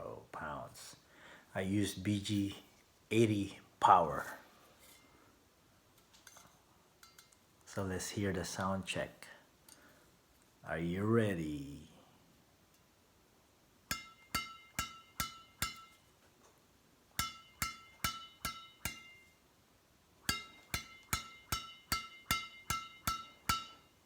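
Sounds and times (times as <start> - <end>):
racket strings pinging: 13.9 - 16.0, 17.2 - 19.3, 20.2 - 23.9.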